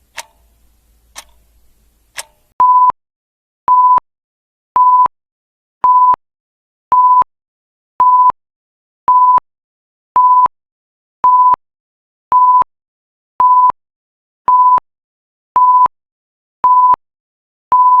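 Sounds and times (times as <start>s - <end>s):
timer alarm beeps: 2.6s - 3.0s, 3.7s - 4.0s, 4.8s - 5.1s, 12.3s - 12.7s, 13.4s - 13.8s, 14.5s - 14.8s, 15.6s - 15.9s, 16.6s - 17.0s, 17.7s - 18.0s.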